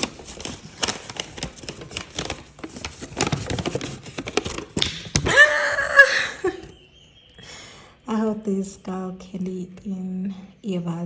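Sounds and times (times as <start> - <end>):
packaging rustling and crinkling: 0.0 - 5.4.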